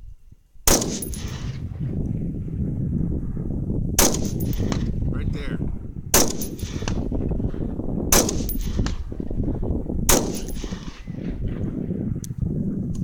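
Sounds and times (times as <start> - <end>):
rifle shots with echo: 0.7 - 1.9, 4.0 - 5.0, 6.1 - 7.5, 8.1 - 9.3, 10.1 - 11.9.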